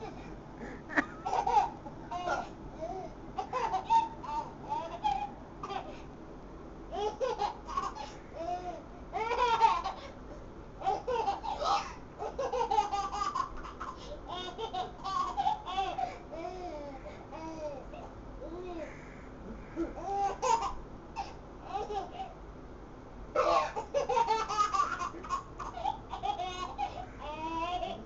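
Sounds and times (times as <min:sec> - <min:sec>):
young child laughing: 0:00.0 - 0:02.5.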